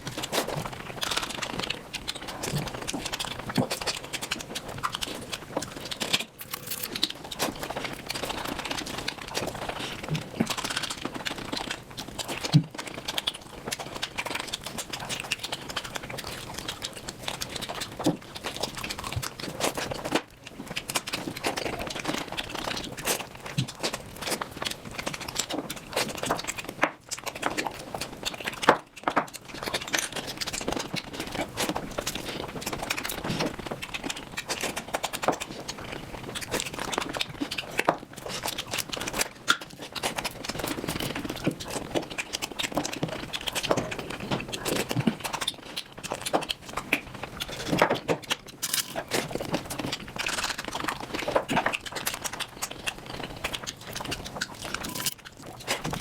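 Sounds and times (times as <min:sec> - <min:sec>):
chewing and mouth clicks: 0:00.0 - 0:56.0.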